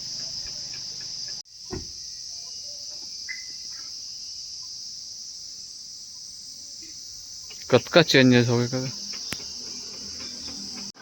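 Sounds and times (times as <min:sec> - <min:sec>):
insects chirring: 0:00.0 - 0:11.0
dull thump: 0:01.7 - 0:02.0.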